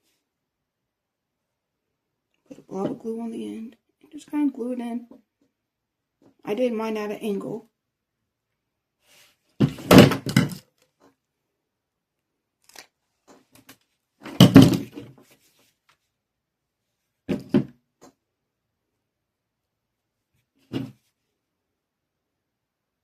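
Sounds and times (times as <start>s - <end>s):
pieces knocking on table: 9.6s - 10.6s, 14.3s - 15.0s.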